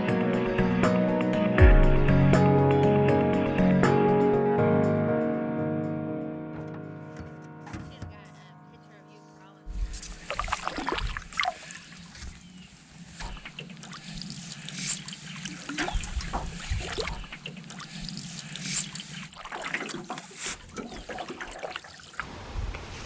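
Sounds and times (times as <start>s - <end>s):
paddle strokes splashing: 9.7s - 23.0s
water trickling off paddle: 9.8s - 23.0s.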